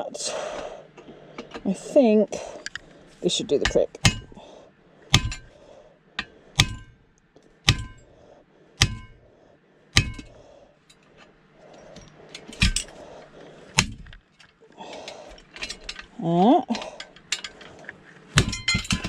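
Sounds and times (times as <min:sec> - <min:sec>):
hammer striking metal: 0:03.6 - 0:04.4, 0:05.1 - 0:05.6, 0:06.2 - 0:07.0, 0:07.6 - 0:08.1, 0:08.8 - 0:09.2, 0:09.9 - 0:10.4, 0:18.4 - 0:19.0.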